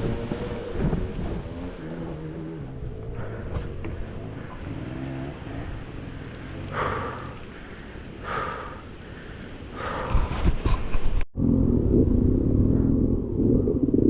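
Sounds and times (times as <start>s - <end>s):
engine revving with clatter: 0.0s - 7.2s
dirt bike engine idling: 2.9s - 9.9s
heavy breaths: 3.1s - 11.0s.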